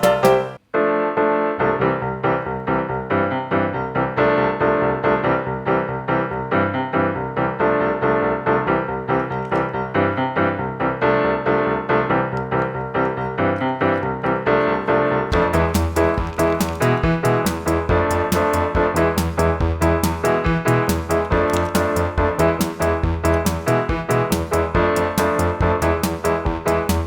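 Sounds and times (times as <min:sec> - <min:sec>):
percussion: 0:00.0 - 0:00.6, 0:15.3 - 0:27.0
bouncy electric piano tune: 0:00.0 - 0:27.0.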